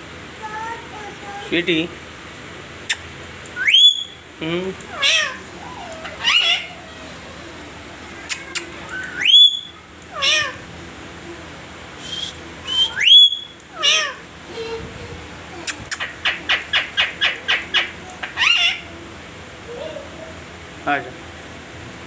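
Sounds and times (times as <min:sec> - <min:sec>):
parrot whistling: 0:02.9 - 0:04.2, 0:04.9 - 0:07.2, 0:08.2 - 0:10.6, 0:12.0 - 0:14.2, 0:15.7 - 0:19.0.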